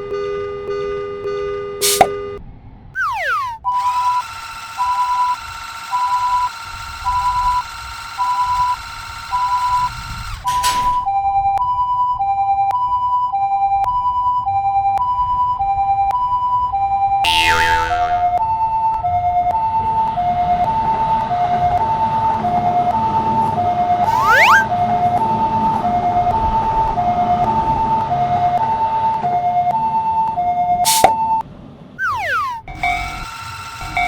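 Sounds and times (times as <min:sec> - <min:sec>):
sharp click: 0:01.8 - 0:02.1, 0:30.9 - 0:31.2
two-tone level crossing alarm: 0:03.0 - 0:31.4, 0:32.0 - 0:34.0
brief rising whistle: 0:24.0 - 0:24.7, 0:30.9 - 0:31.2, 0:32.0 - 0:32.8.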